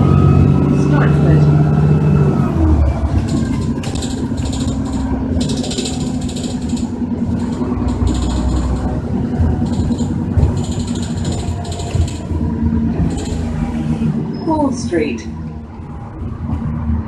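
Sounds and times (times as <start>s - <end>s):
bus engine drone: 0.0s - 17.0s
high rattling and hiss: 3.2s - 9.0s, 9.6s - 12.3s.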